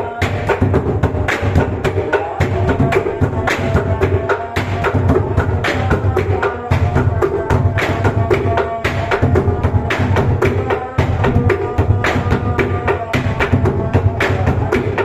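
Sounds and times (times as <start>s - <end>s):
large drum beaten fast: 0.0s - 15.0s.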